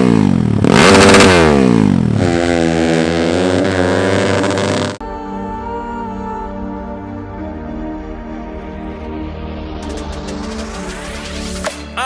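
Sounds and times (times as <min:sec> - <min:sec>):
dirt bike engine revving: 0:00.0 - 0:05.0
background music: 0:05.0 - 0:12.0.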